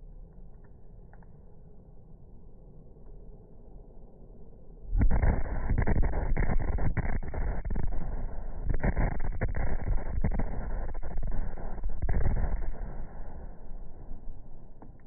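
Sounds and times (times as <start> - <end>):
loud explosion blast: 5.0 - 14.8.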